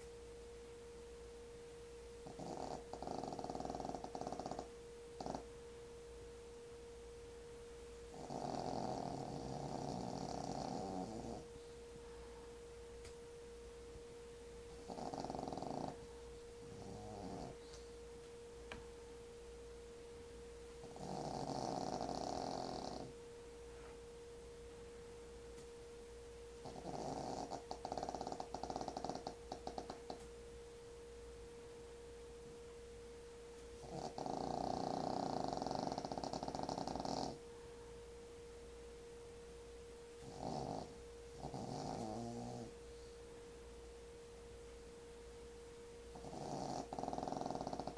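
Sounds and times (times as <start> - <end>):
faint steady hum: 0.0 - 47.9
pet snoring: 2.2 - 5.5, 8.1 - 11.5, 14.8 - 17.8, 20.8 - 23.2, 26.6 - 30.2, 33.8 - 37.4, 40.2 - 42.8, 46.1 - 47.9.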